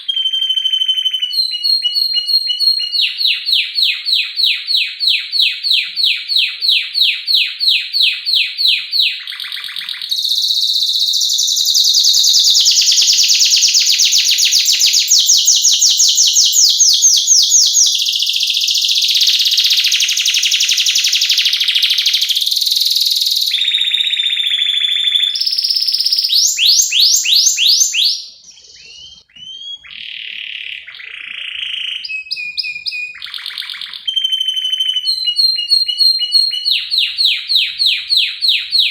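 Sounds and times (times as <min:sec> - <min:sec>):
canary singing: 0:00.0 - 0:38.9.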